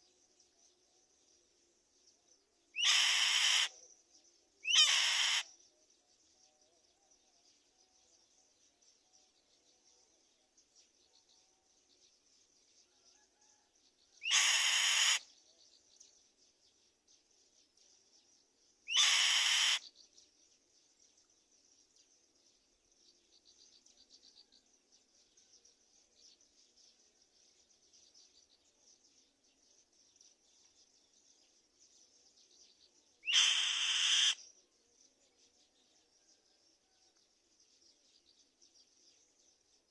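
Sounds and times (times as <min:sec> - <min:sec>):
bird's harsh raspy screeches: 0:02.8 - 0:03.7, 0:04.7 - 0:05.5, 0:14.2 - 0:15.2, 0:18.9 - 0:19.8, 0:33.3 - 0:34.4.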